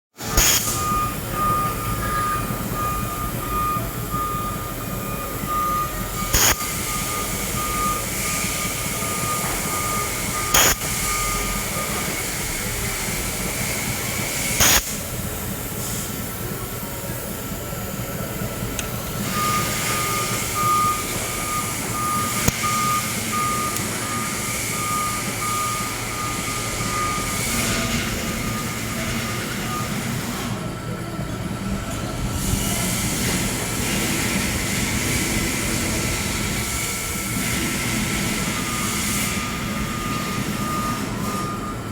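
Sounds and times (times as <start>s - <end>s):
electronic beeper high tone: 0.2s - 12.7s, 19.2s - 30.0s
sharp clicks: 6.3s - 6.8s, 10.6s - 11.1s, 14.6s - 15.0s.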